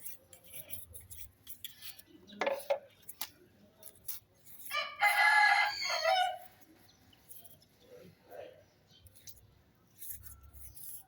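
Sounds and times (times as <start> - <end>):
rooster crowing: 4.7 - 6.4.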